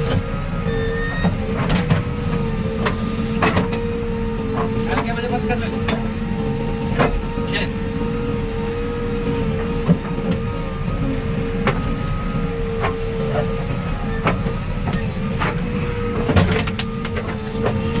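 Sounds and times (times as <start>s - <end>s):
diesel engine running with whine: 0.0s - 18.0s.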